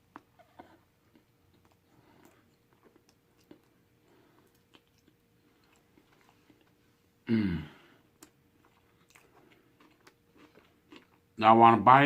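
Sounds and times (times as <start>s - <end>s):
chewing food: 0.0s - 6.9s, 8.0s - 11.4s.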